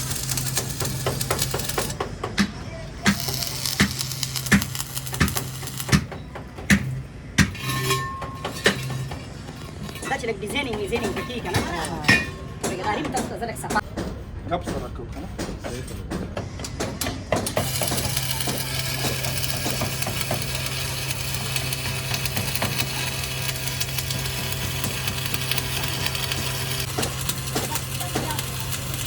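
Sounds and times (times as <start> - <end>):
arc welding crackling sizzle: 0.0 - 2.0, 3.0 - 6.1, 17.6 - 29.0
metal knocks: 4.5 - 17.8.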